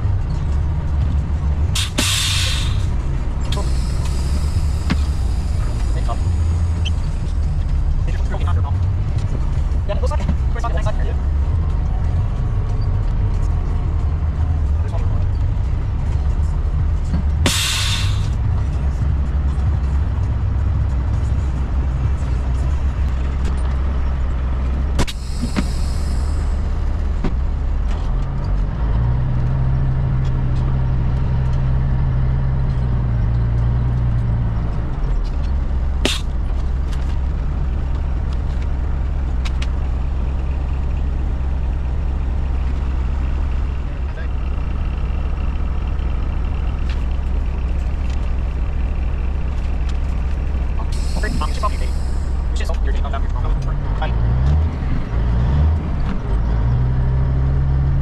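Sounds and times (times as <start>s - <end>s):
diesel truck engine droning: 0.0s - 58.0s
air brake hiss: 1.8s - 2.9s, 3.6s - 5.8s, 17.4s - 18.4s, 25.1s - 26.7s, 36.1s - 36.3s, 50.9s - 52.4s.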